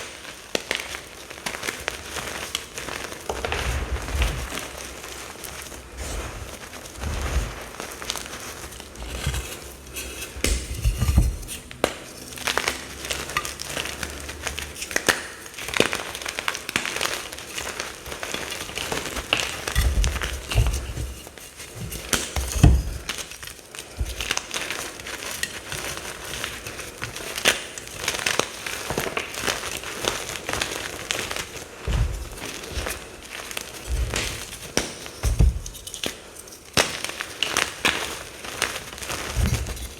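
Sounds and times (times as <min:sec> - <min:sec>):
powder crunching and crackling: 0:00.0 - 0:39.9.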